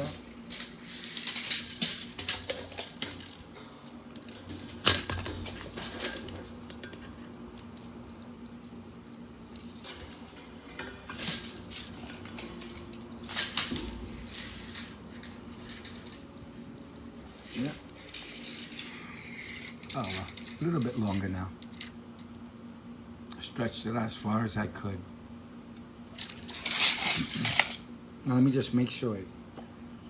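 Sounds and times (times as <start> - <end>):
cable clicks and metallic clinks: 0.0 - 22.0, 26.2 - 27.8.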